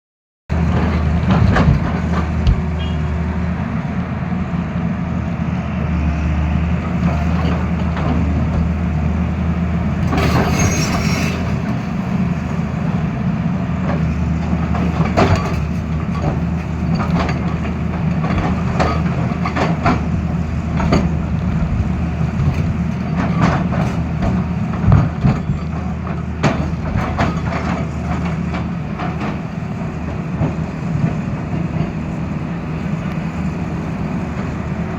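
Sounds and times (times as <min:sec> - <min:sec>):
excavator diesel engine running: 0:00.5 - 0:34.9
knocks and clanks: 0:00.7 - 0:03.0, 0:13.9 - 0:29.4.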